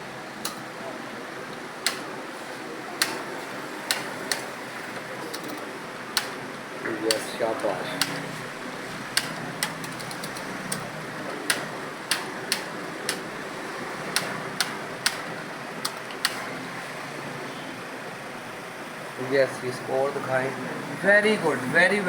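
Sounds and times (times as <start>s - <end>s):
keyboard typing clicks: 9.1s - 13.3s.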